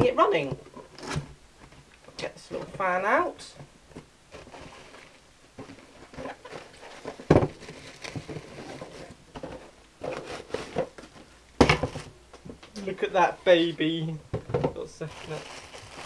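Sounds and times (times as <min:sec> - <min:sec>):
cardboard packaging rustling: 0:03.9 - 0:12.2, 0:14.8 - 0:16.0.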